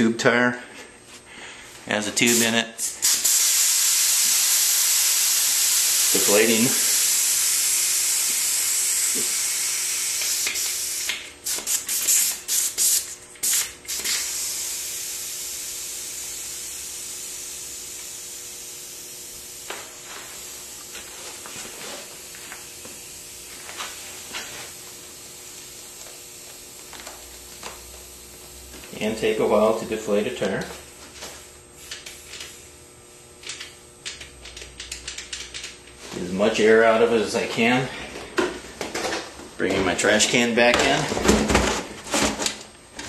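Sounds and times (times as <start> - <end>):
air hissing from tire valve: 2.3 - 20.8.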